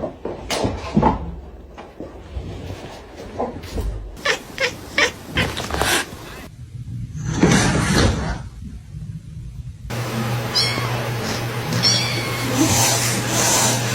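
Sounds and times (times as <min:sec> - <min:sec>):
cat meowing: 0:04.2 - 0:06.5, 0:10.5 - 0:12.9.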